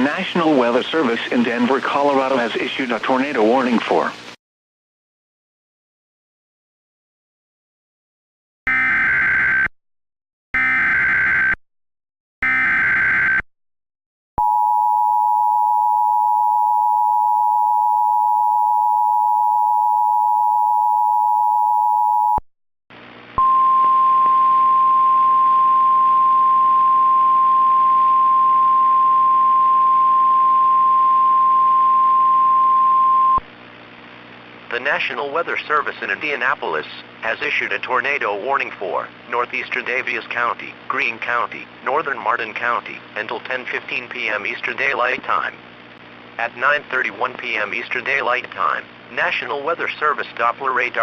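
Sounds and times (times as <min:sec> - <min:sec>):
radio hiss: 0:00.0 - 0:04.4.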